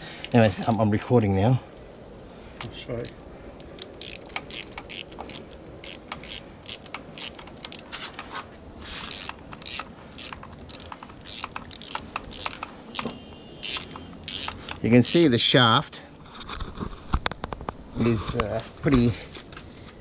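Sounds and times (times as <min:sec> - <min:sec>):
high-pitched hum: 0:08.4 - 0:20.0
sharp clicks and light taps: 0:09.2 - 0:15.2.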